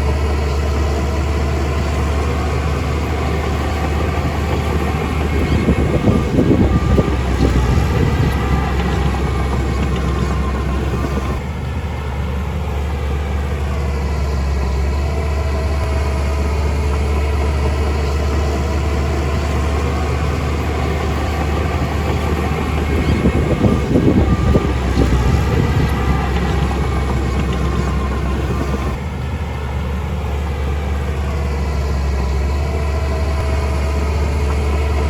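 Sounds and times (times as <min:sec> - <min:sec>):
heavy diesel engine rumbling: 0:00.0 - 0:35.0.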